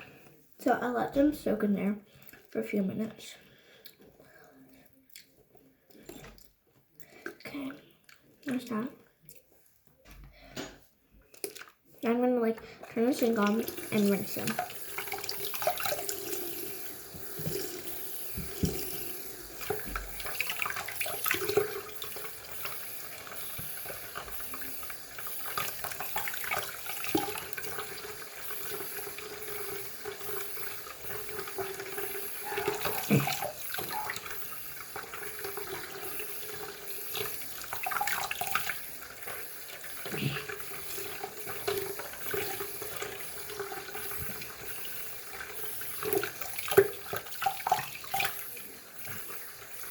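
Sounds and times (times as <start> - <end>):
tap water running: 11.3 - 49.9
water splashing: 12.6 - 49.9.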